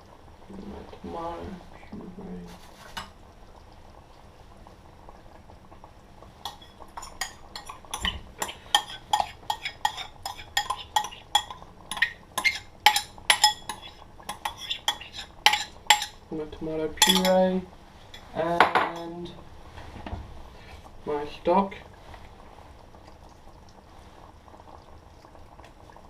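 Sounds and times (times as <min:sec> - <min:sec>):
metal spoon clinking on cookware: 0:06.4 - 0:16.2, 0:17.0 - 0:17.4.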